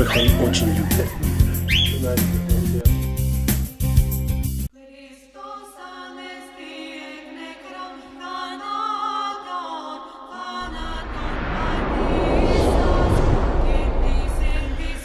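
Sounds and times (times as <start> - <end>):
music with heavy bass: 0.0 - 4.3
choir singing sustained notes: 4.8 - 15.0.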